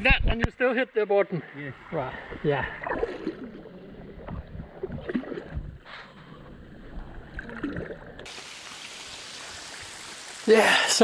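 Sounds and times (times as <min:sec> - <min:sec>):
water rushing: 0:08.3 - 0:11.0.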